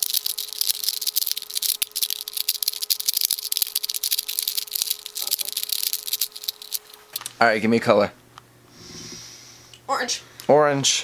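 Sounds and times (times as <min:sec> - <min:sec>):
plastic puzzle cube clicking: 0:00.0 - 0:07.3.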